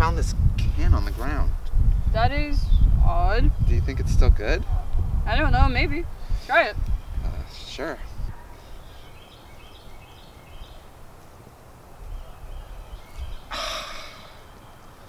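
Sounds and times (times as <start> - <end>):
low outdoor rumble: 0.0 - 8.4
birds chirping: 1.0 - 15.0.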